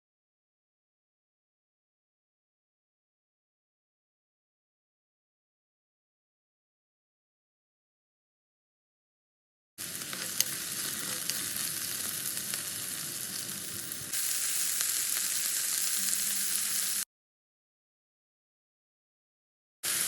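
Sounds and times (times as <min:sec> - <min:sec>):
food sizzling in hot oil: 0:09.8 - 0:17.1.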